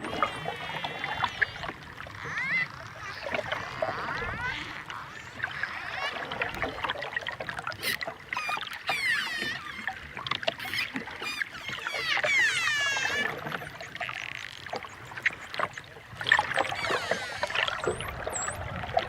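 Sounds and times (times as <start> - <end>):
dolphin clicks and buzzing pulses: 0.0 - 19.0
dolphins whistling: 7.8 - 10.0, 10.6 - 15.8, 16.4 - 18.8.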